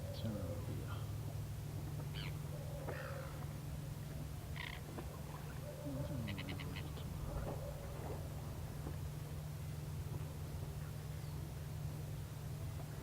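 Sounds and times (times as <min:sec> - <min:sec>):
steady low hum: 0:00.0 - 0:13.0
birds calling: 0:02.0 - 0:03.6, 0:04.4 - 0:08.1.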